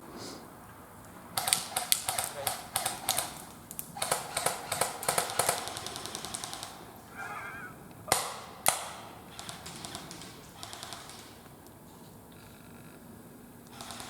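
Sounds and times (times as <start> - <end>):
airsoft gun bursts: 1.4 - 6.9, 8.1 - 11.6, 13.7 - 14.0
loud single gunshot cracks: 8.1 - 9.1.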